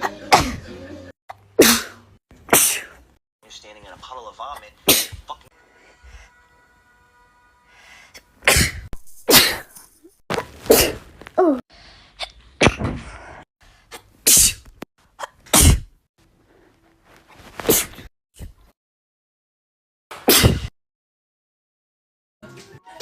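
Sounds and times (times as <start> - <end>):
person sneezing: 1.6 - 3.0, 4.8 - 5.3, 8.4 - 9.7, 10.3 - 11.0, 14.2 - 15.9, 20.2 - 20.7.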